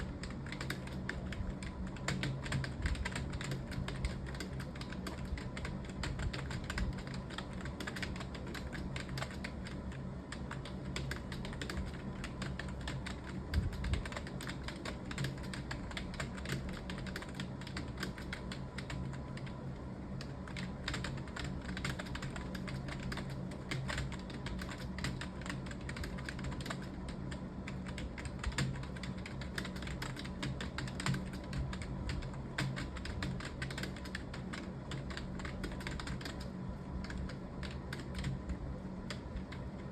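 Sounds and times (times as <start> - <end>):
keyboard typing: 0.0 - 19.6, 20.2 - 39.9
steady low hum: 0.0 - 39.9.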